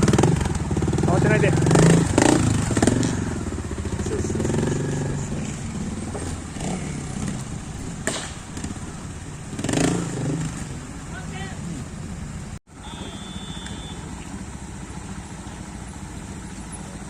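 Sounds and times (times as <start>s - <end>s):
motorcycle engine revving: 0.0s - 17.0s
sharp knock: 8.0s - 8.7s.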